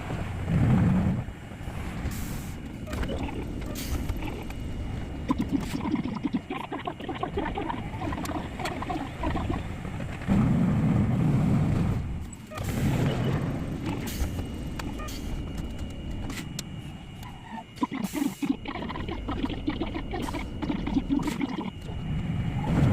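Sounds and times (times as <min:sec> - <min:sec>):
streetcar wheels and motor rumbling: 0:00.0 - 0:17.6.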